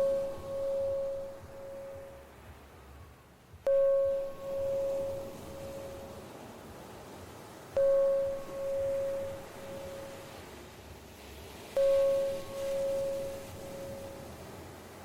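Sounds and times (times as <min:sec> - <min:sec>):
singing bowl chime: 0:00.0 - 0:02.4, 0:03.6 - 0:06.3, 0:07.8 - 0:10.5, 0:11.7 - 0:14.4.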